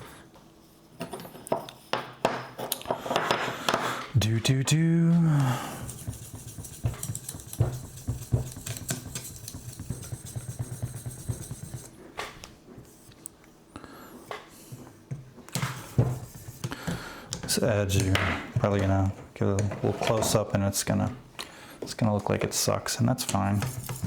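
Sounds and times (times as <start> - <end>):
sharpening stone rubbing on blade: 5.7 - 11.9.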